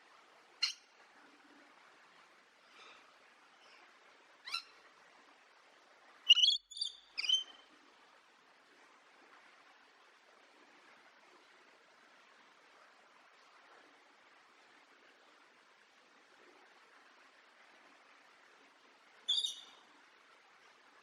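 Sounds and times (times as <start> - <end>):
faint steady hiss: 0.0 - 21.0
parrot chirping calls: 4.4 - 4.7, 6.3 - 7.6, 19.3 - 19.7.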